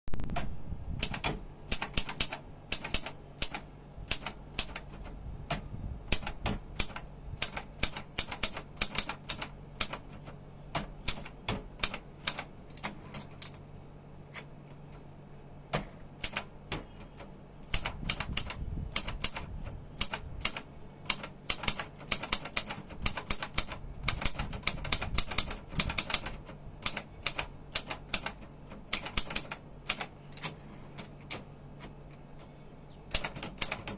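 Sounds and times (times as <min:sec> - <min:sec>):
typewriter keys clacking: 0:16.2 - 0:32.0, 0:33.1 - 0:33.9.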